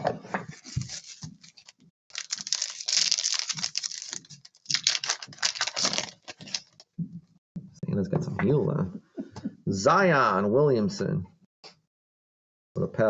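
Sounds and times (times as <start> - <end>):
packaging crinkling and tearing: 0.5 - 6.9.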